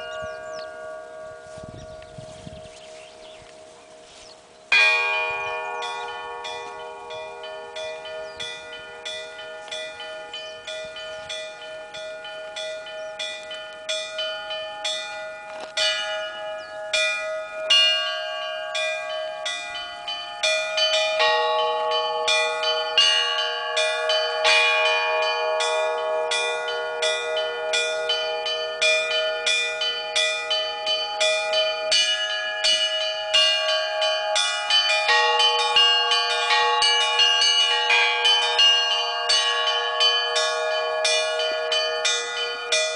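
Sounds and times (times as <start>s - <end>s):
larger bells ringing: 0.0s - 42.9s
small high bells struck rapidly: 4.7s - 42.9s.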